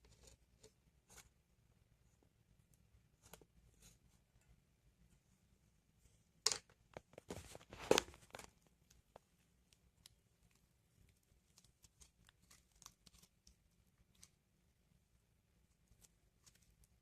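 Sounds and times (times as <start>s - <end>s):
rustling and scraping: 6.0s - 9.3s.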